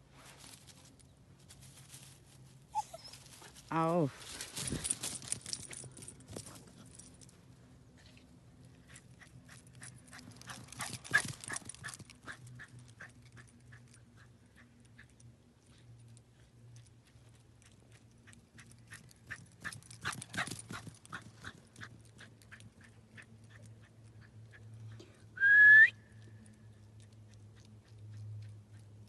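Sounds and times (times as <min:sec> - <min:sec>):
dog claws clicking and clattering: 0:04.5 - 0:07.4, 0:08.7 - 0:24.6.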